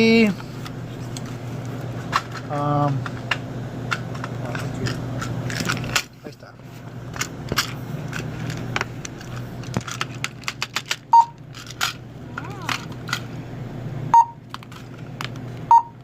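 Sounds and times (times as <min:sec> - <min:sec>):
steady low hum: 0:00.0 - 0:16.0
clicks and rustles of goods: 0:00.6 - 0:06.4, 0:07.1 - 0:13.3, 0:14.5 - 0:15.7
barcode scanner beeping: 0:11.1 - 0:11.4, 0:14.1 - 0:14.4, 0:15.7 - 0:16.0.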